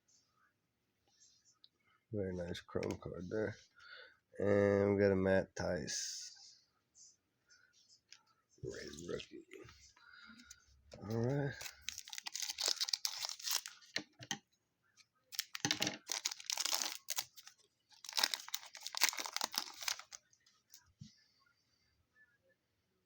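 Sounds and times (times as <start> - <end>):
card pack wrapper tearing: 11.2 - 14.2, 15.3 - 20.2.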